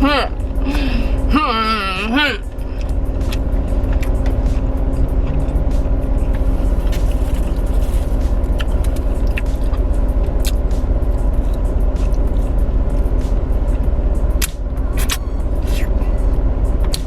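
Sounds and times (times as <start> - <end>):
car idling hum: 0.0 - 17.0
chewing and eating: 2.6 - 13.1.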